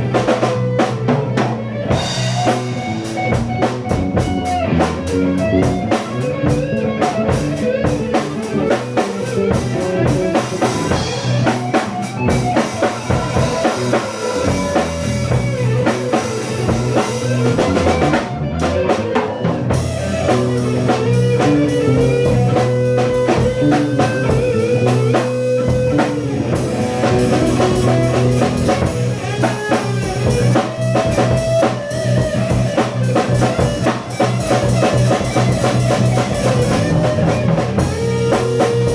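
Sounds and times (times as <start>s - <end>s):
bass guitar: 0.0s - 38.9s
drum kit beating: 0.0s - 38.9s
electric guitar melody: 0.0s - 38.9s.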